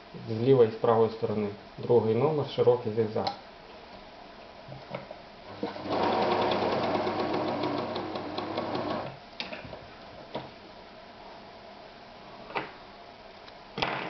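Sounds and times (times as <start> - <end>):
sewing machine stitching: 5.5 - 9.2.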